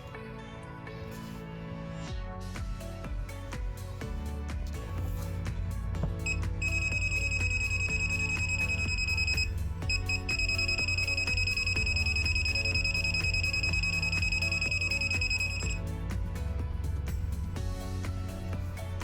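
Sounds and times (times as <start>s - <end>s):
background music with beat: 2.1s - 19.0s
high-pitched detector buzzer: 6.3s - 15.8s.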